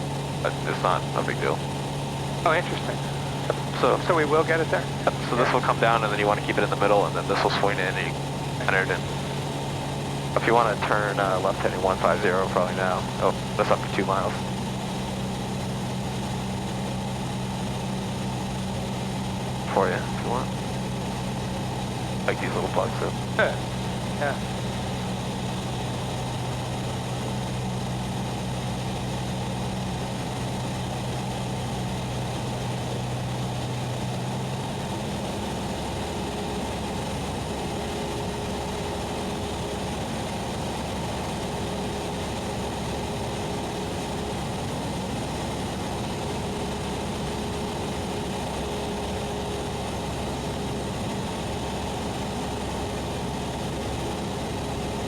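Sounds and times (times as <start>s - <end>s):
light aircraft engine drone: 0.0s - 55.0s.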